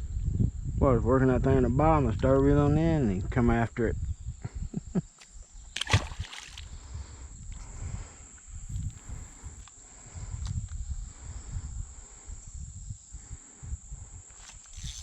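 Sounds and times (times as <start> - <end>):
water sloshing around kayak: 5.5 - 6.8.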